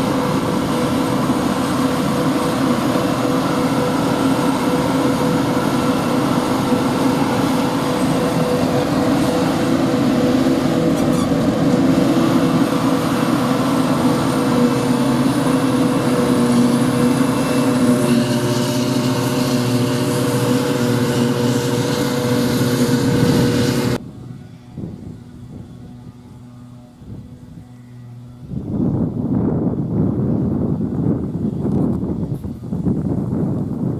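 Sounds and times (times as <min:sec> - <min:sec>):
constant mechanical whine: 0:00.0 - 0:33.9
forage harvester droning: 0:00.0 - 0:33.9.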